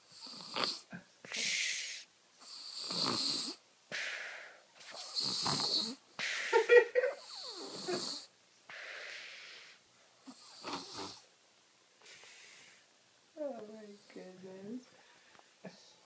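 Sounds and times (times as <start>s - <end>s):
baby snoring: 0.0s - 3.6s, 4.8s - 6.0s, 7.2s - 11.3s
breathy wheezing breaths: 8.7s - 9.8s.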